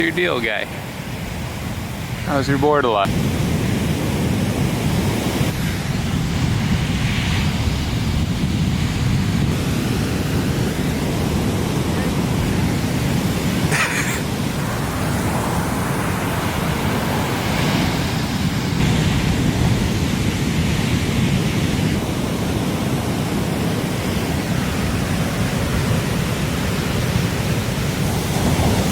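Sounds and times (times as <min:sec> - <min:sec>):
waves breaking and whitewater rushing: 0:00.0 - 0:28.9
wind on microphone: 0:00.0 - 0:28.9.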